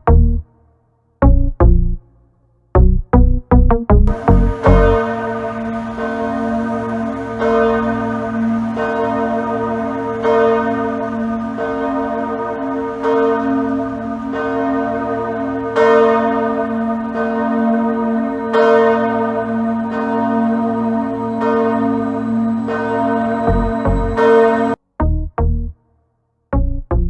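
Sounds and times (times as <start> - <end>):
church bells pealing: 4.1 - 24.8.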